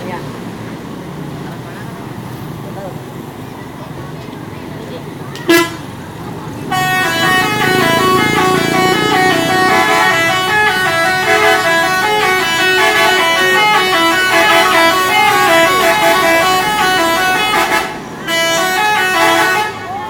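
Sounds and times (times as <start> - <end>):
multi-tone air horn melody: 5.5 - 5.9, 6.6 - 20.0.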